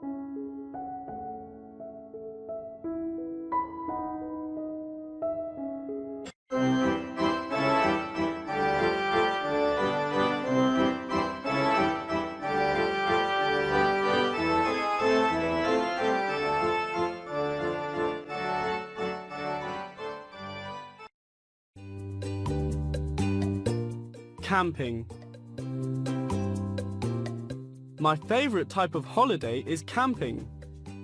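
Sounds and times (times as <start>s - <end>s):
organ-like keyboard music: 6.5s - 21.1s.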